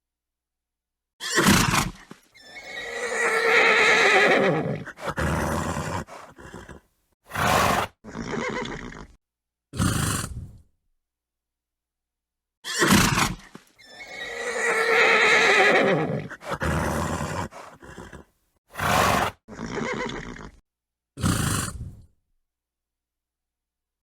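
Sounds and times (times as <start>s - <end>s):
horse whinnying: 1.2s - 9.2s, 12.6s - 20.6s.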